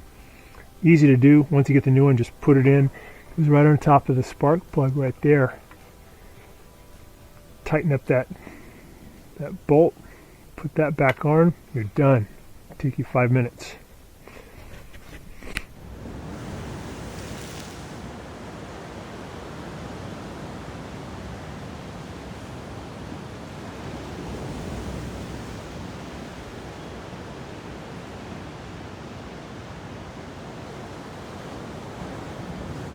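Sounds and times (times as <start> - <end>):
steady rushing noise: 0.0 - 20.5.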